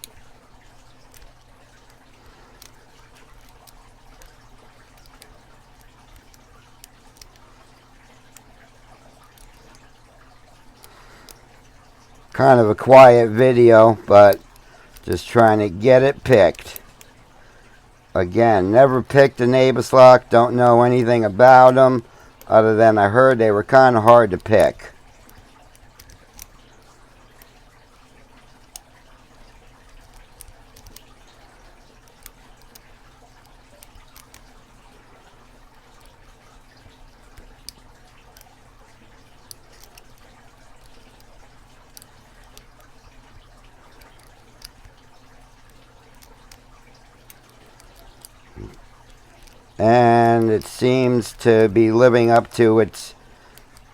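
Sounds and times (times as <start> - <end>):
low steady hum: 0.0 - 53.9
metallic lock picking clicks: 29.9 - 31.1, 32.0 - 34.5, 39.4 - 49.7.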